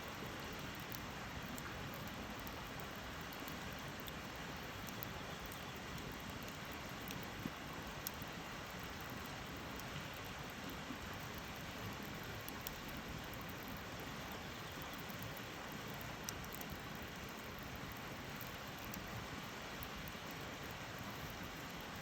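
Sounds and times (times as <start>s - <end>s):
campfire hissing and crackling: 0.0s - 22.0s.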